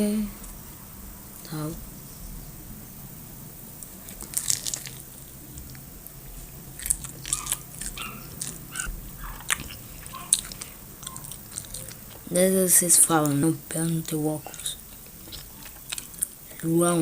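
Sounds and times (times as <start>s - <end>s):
person chewing crunchy food: 3.9s - 12.3s, 14.5s - 16.6s.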